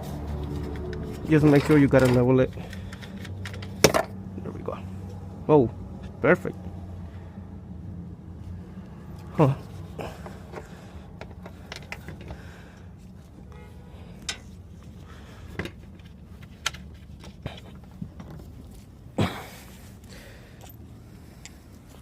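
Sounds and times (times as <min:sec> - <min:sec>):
tools and metal parts clinking: 0:01.0 - 0:04.2.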